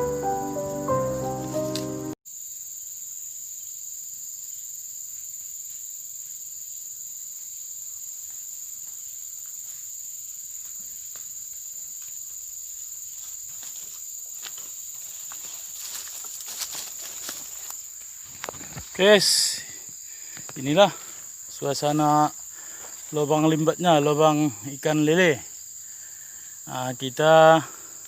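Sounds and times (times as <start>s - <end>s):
crickets and insects droning: 0.0s - 28.0s
faint ticks and rustles: 4.5s - 19.2s.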